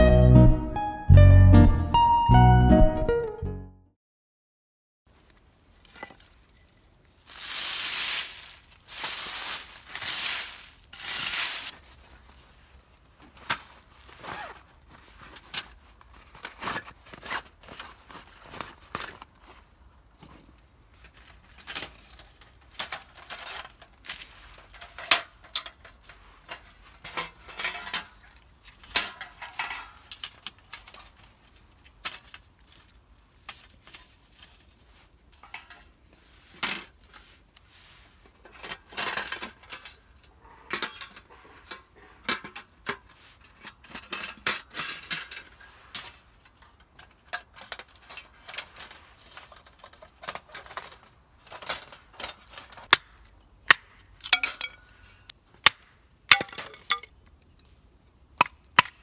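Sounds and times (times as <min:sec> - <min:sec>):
rustling: 0:05.1 - 0:39.6.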